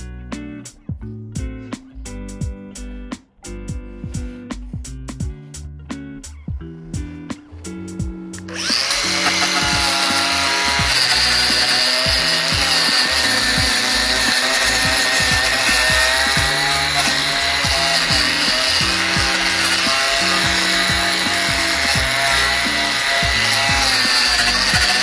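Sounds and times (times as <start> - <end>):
background music: 0.0 - 25.0
power tool whining: 8.5 - 25.0.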